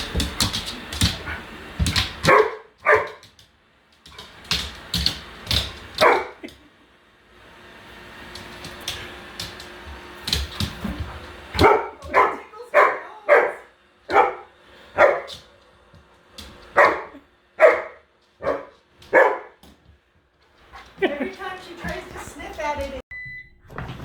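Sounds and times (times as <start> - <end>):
dog barking: 2.2 - 3.2, 6.0 - 6.4, 11.6 - 15.4, 16.8 - 19.6
robot vacuum humming: 4.3 - 13.4.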